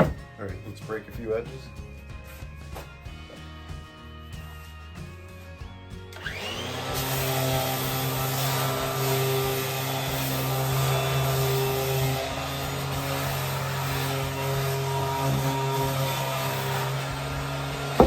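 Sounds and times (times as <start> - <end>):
background music: 0.0 - 8.0
power tool motor running: 6.2 - 18.0.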